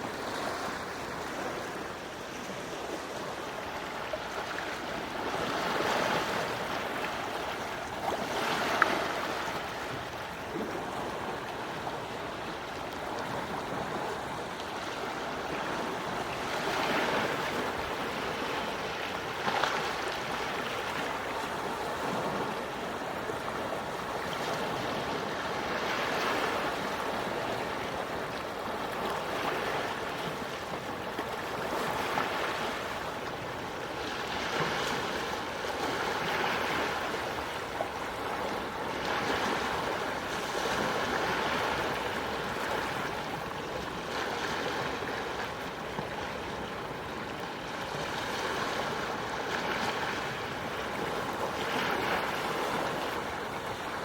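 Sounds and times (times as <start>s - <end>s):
waves washing onto shore: 0.0s - 54.0s.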